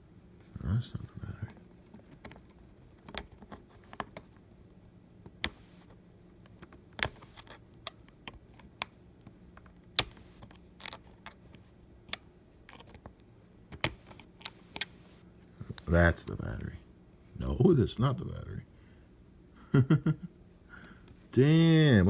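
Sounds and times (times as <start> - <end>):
small tools clicking on phone: 5.2 - 15.1.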